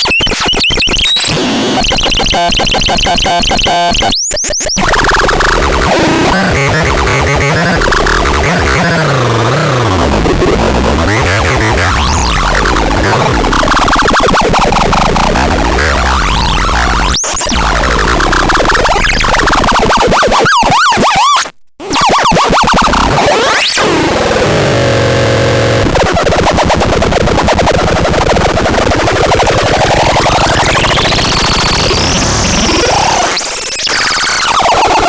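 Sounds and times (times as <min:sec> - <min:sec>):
warbling synthesizer noise: 0:04.7 - 0:20.1, 0:26.4 - 0:35.0.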